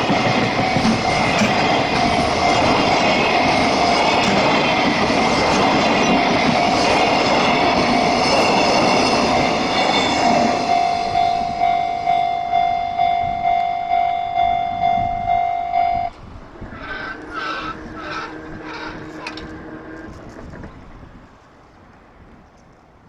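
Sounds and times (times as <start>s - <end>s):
train wheels clattering on rails: 0.0s - 11.7s, 16.6s - 21.1s
crossing warning bell ringing: 0.0s - 20.2s.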